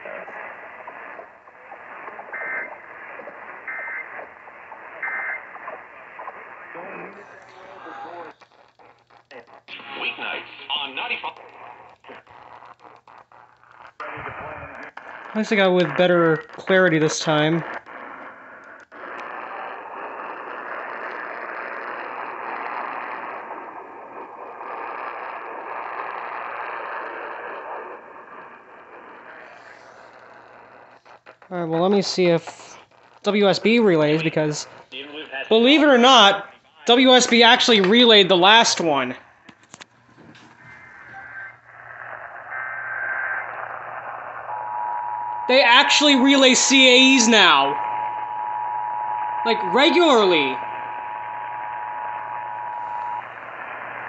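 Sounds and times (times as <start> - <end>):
radio static hiss: 0.0 - 54.0
warbling digital data tones: 40.6 - 54.0.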